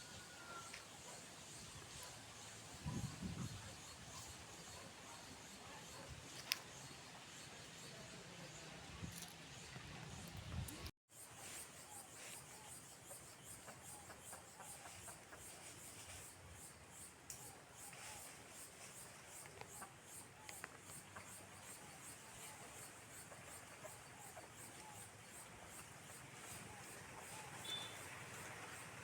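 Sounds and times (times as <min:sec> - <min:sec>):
small ticks: 0:06.3 - 0:06.8, 0:17.2 - 0:17.6, 0:19.4 - 0:21.8
faint short chirps: 0:27.6 - 0:28.1.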